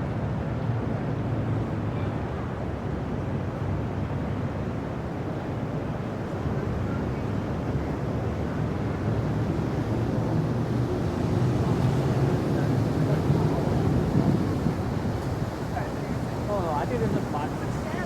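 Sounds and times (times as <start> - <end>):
boat engines passing: 12.3 - 18.0.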